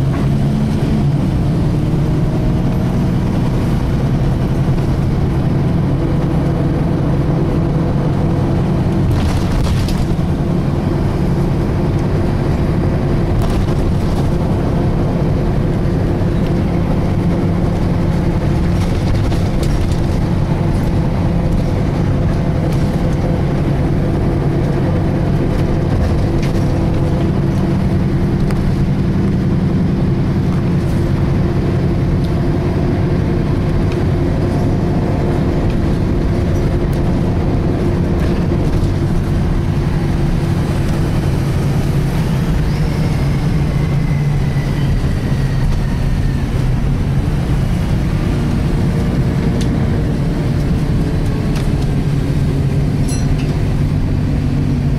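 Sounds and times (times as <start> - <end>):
bus diesel engine running: 0.0 - 54.9
differential whine tones: 31.2 - 54.9.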